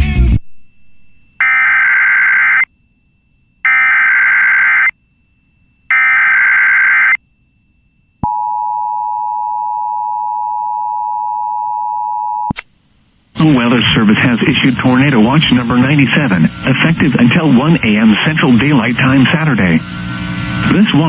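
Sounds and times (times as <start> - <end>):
digital data tone bursts: 0.7 - 2.7, 13.6 - 21.0.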